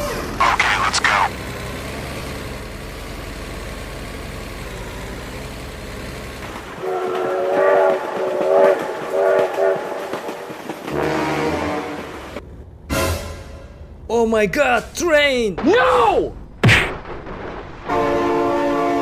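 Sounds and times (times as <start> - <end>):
low rumble of train running: 0.0 - 15.4, 17.8 - 19.0
train horn blasts: 6.8 - 13.9, 17.9 - 19.0.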